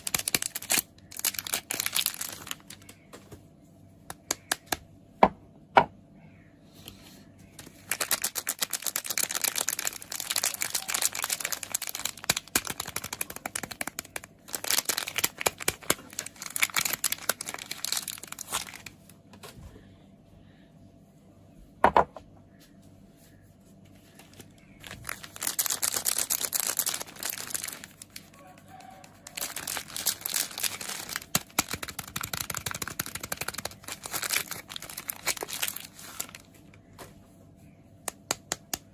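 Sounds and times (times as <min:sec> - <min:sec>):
wrapper crinkling: 0:00.0 - 0:03.1, 0:07.6 - 0:19.2, 0:24.0 - 0:36.9.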